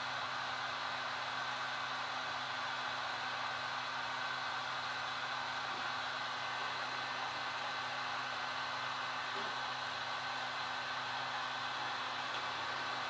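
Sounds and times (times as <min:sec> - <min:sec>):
heat gun blowing air: 0:04.9 - 0:13.0.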